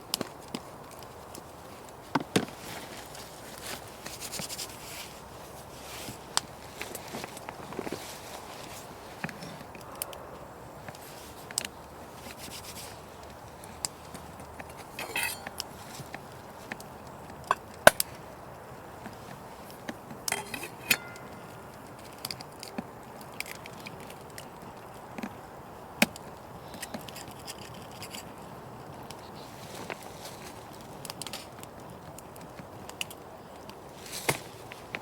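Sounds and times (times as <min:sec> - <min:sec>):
knocks and clicks of handled objects: 0:13.8 - 0:18.2, 0:19.0 - 0:23.6
short ringing clink: 0:15.0 - 0:15.6, 0:20.3 - 0:21.6.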